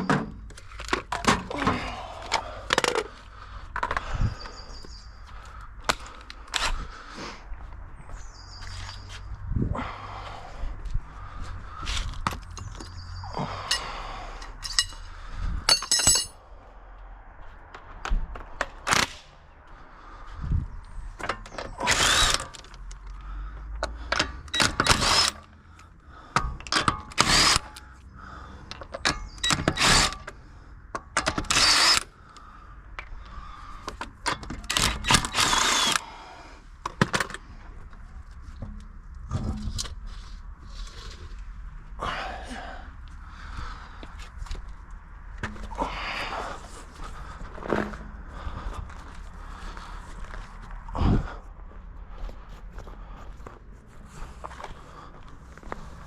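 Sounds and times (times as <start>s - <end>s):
knocks and clanks of handling: 0.0s - 4.1s, 15.7s - 16.4s, 33.8s - 36.0s, 36.8s - 40.2s
impact wrench bursts: 21.4s - 22.8s, 24.1s - 25.6s, 26.4s - 28.0s, 29.0s - 30.4s, 31.0s - 32.2s, 34.2s - 36.2s.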